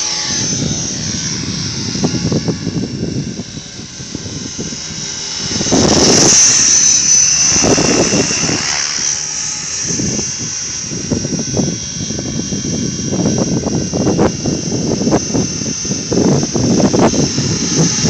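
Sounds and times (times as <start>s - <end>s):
model helicopter whine: 0.0s - 18.0s
wind buffeting microphone: 0.0s - 18.0s.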